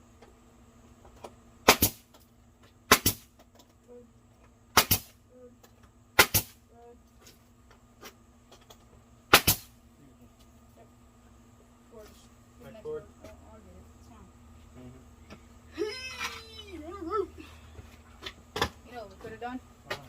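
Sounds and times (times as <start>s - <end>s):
nail gun firing into wood: 1.6s - 2.2s, 2.9s - 3.3s, 4.7s - 5.2s, 6.2s - 6.6s, 9.3s - 9.7s.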